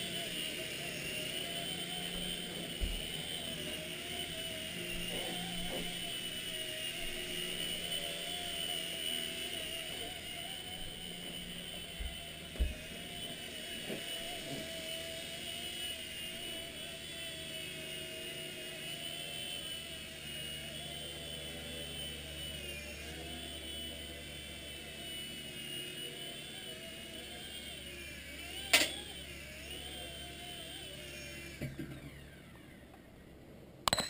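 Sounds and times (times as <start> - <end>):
toy helicopter motor whining: 0.0 - 33.2.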